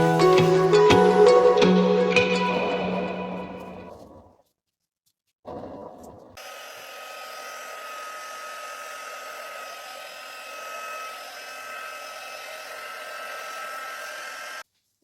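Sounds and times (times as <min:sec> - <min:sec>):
hot-air blower running: 0:06.4 - 0:14.6.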